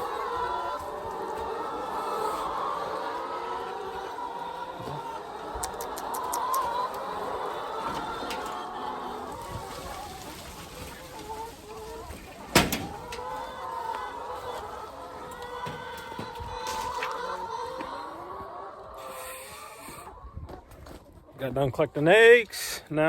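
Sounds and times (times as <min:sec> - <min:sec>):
chickens clucking: 0:00.0 - 0:23.0.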